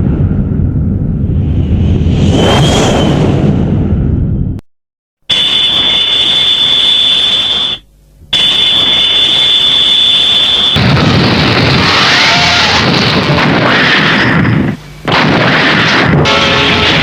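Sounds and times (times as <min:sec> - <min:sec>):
high-pitched whine: 0:00.0 - 0:04.6, 0:05.3 - 0:17.0
dense noisy rush with wavering tones: 0:08.8 - 0:17.0.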